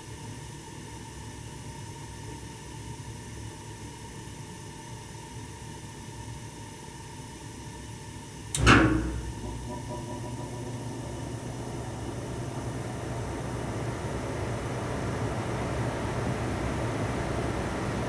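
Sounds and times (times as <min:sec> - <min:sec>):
furnace blower humming: 0:08.5 - 0:18.0
loud thump: 0:08.6 - 0:12.1.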